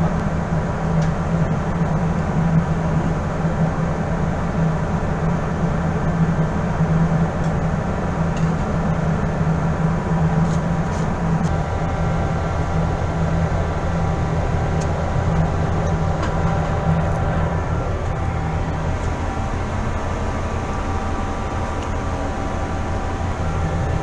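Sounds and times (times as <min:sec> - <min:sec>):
machinery drone: 0:11.1 - 0:24.0.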